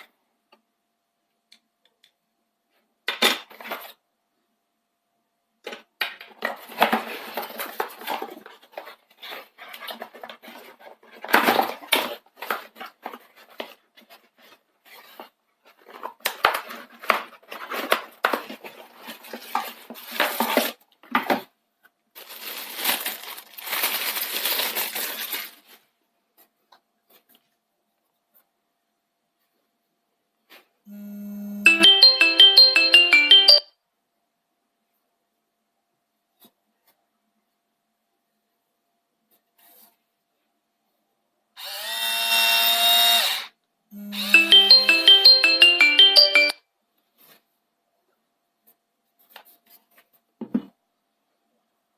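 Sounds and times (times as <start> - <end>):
packaging rustling: 22.2 - 25.9.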